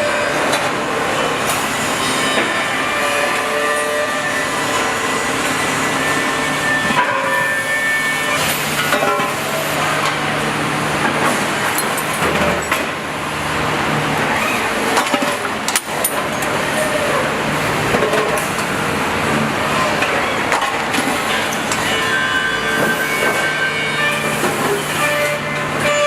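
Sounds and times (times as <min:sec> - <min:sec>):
machinery clicks and clanks: 0:00.0 - 0:26.0.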